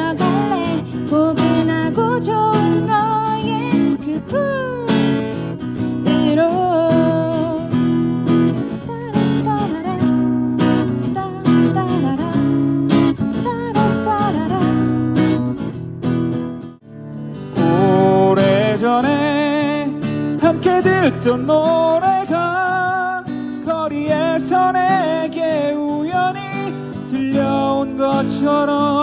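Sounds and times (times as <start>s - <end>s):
person singing: 0.0s - 5.3s
strummed acoustic guitar: 0.0s - 29.0s.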